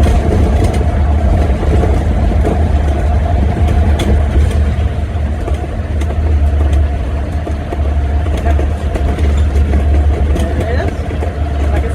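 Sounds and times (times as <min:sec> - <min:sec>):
vehicle cabin road and engine drone: 0:00.0 - 0:11.9.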